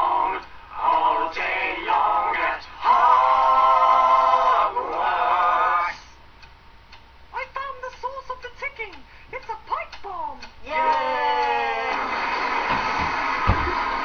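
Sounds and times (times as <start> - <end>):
voices singing a chant: 0.0 - 6.2.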